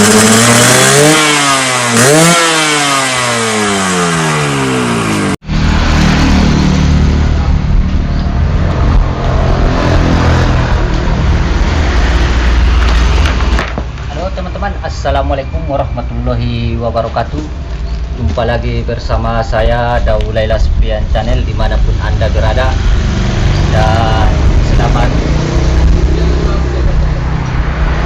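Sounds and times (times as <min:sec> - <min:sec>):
motorcycle engine revving: 0:00.0 - 0:13.7, 0:21.6 - 0:28.0.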